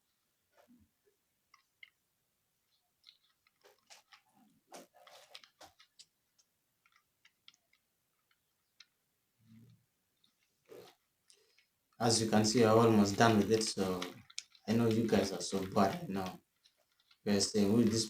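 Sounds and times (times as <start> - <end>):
plastic puzzle cube clicking: 4.8 - 18.0.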